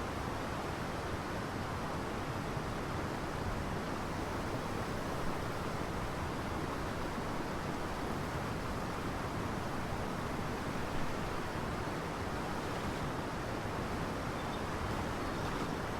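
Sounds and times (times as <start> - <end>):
wind: 0.0 - 15.9
rushing water: 0.1 - 15.9.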